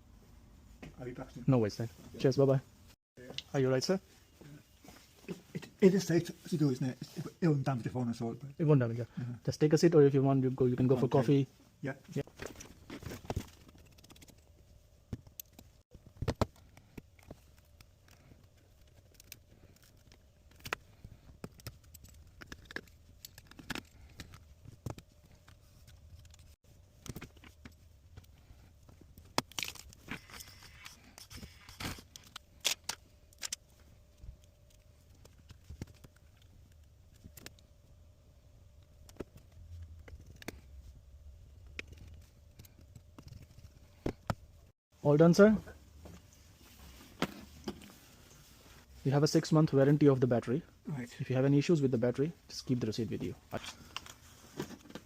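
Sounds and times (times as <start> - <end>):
small tools clicking and scraping: 16.5 - 28.4.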